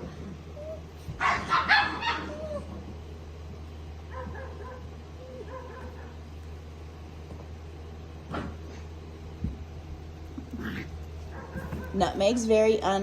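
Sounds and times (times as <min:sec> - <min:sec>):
puppies whining: 0:00.0 - 0:03.3, 0:04.0 - 0:06.4
puppies yipping and barking: 0:00.6 - 0:03.0, 0:04.1 - 0:06.2.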